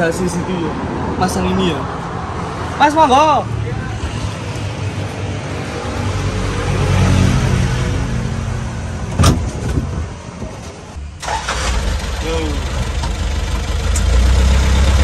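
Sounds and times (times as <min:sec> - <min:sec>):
truck engine running: 0:11.0 - 0:15.0.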